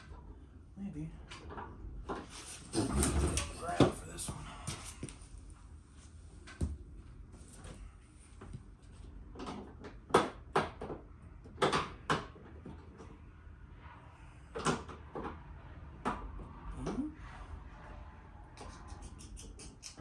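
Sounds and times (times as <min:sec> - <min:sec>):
plastic parts knocking and clacking: 0:09.3 - 0:13.0.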